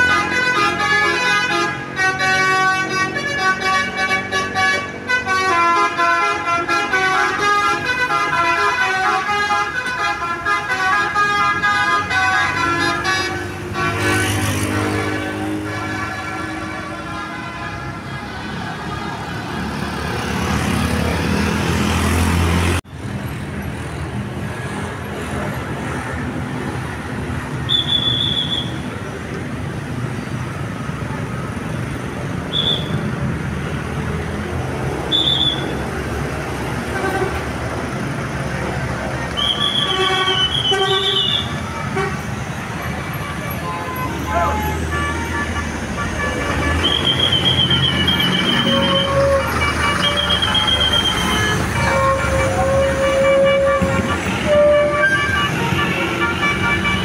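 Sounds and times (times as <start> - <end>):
multi-note bus horn tune: 0.0 - 19.2, 36.8 - 37.5, 39.4 - 57.0
bus engine: 0.0 - 57.0
street noise: 0.0 - 57.0.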